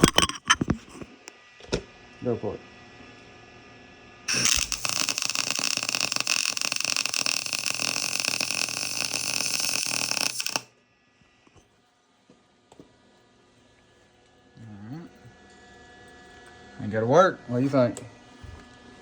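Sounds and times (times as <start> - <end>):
welder arc crackling and sizzling: 4.3 - 10.7.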